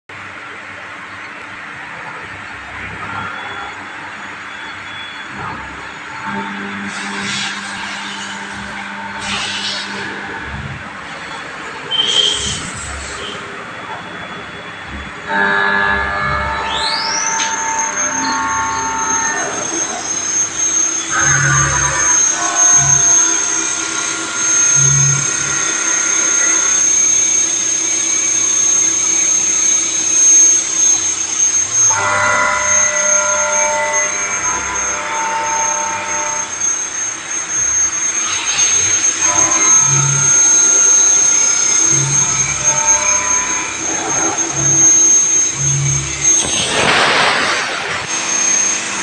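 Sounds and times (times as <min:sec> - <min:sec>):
low hums: 0:00.1 - 0:49.0
machine high-pitched whine: 0:00.1 - 0:49.0
machine noise hiss: 0:00.2 - 0:49.0
hissing noise: 0:34.1 - 0:49.0.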